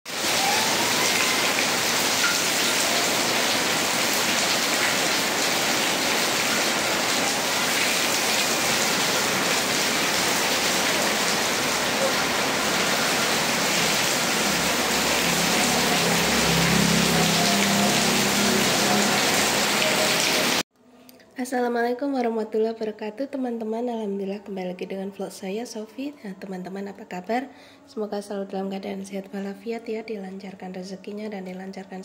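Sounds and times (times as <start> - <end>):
heavy rain falling: 0.1 - 20.6.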